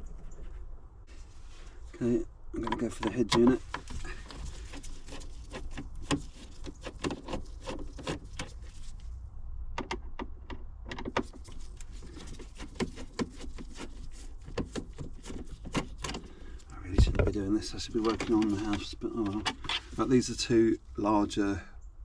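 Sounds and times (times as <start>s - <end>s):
steady low hum: 0.0s - 22.0s
hand tools clicking on plastic trim: 14.5s - 16.3s.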